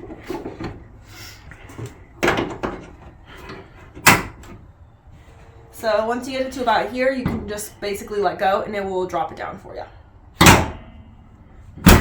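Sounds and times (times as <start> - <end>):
car hood clunking shut: 10.4 - 10.8.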